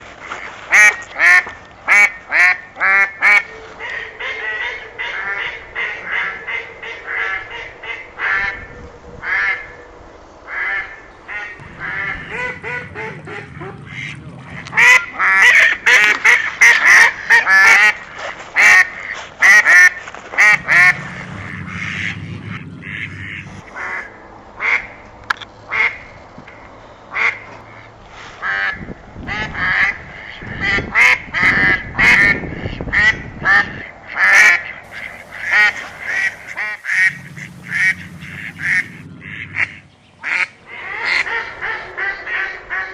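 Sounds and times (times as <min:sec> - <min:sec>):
geese honking: 0:10.5 - 0:18.0, 0:20.4 - 0:24.8, 0:34.3 - 0:42.5.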